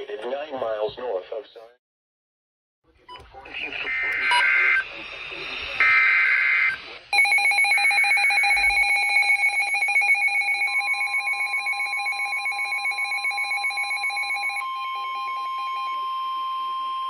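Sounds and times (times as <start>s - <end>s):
broadcast data tones: 3.1s - 14.6s
steady warning tone: 3.1s - 17.0s.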